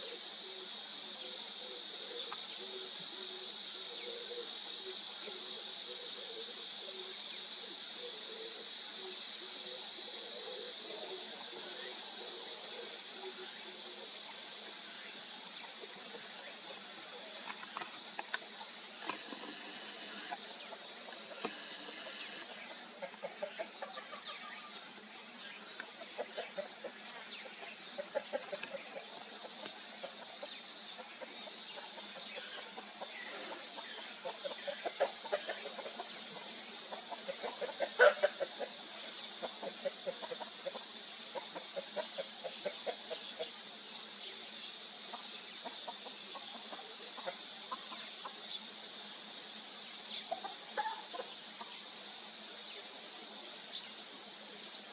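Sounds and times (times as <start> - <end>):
steady high hiss: 0.0 - 54.9
chickens clucking: 10.0 - 43.8, 45.0 - 48.4, 50.1 - 52.0.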